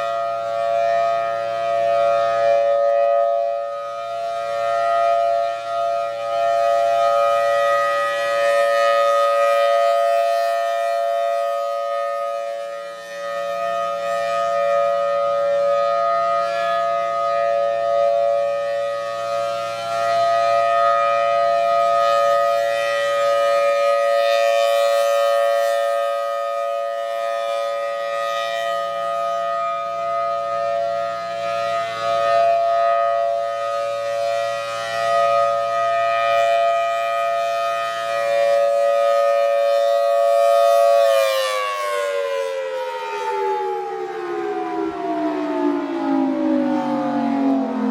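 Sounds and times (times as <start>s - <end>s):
outdoor warning siren: 0.0s - 47.9s.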